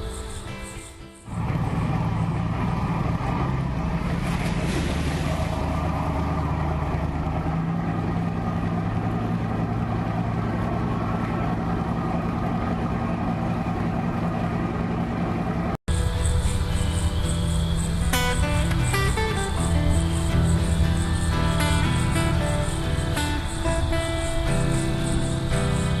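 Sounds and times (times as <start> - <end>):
low engine drone: 1.2 - 26.0.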